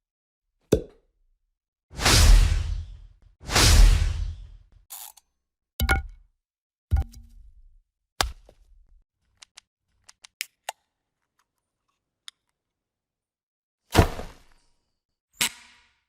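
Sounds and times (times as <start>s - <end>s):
sharp hits with low thump: 2.0s - 4.6s.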